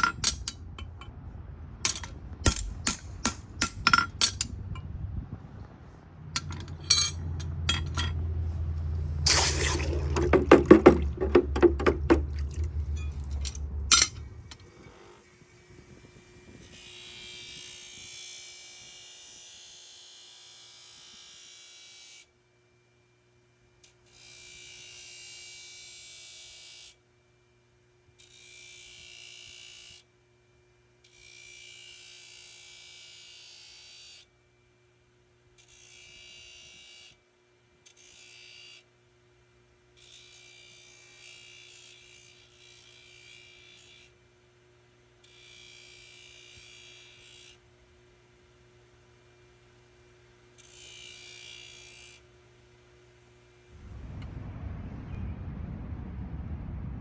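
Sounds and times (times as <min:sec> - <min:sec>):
low hum: 0:00.0 - 0:16.6, 0:53.7 - 0:57.0
hammer knocks on metal: 0:10.2 - 0:12.4
small electric tool buzzing: 0:14.6 - 0:22.3, 0:23.8 - 0:27.0, 0:28.2 - 0:30.0, 0:31.0 - 0:34.3, 0:35.6 - 0:37.2, 0:37.8 - 0:38.9, 0:40.0 - 0:44.2, 0:45.2 - 0:47.6, 0:50.5 - 0:52.3.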